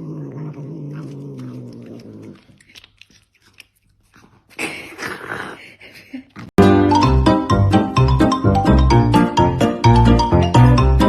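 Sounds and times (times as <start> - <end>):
cat growling yowl: 0.0 - 3.2
soft chewing clicks: 0.9 - 4.6.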